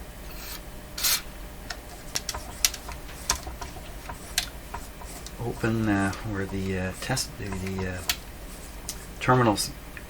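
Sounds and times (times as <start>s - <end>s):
low electrical hum: 0.0s - 10.0s
short hiss: 0.3s - 1.3s.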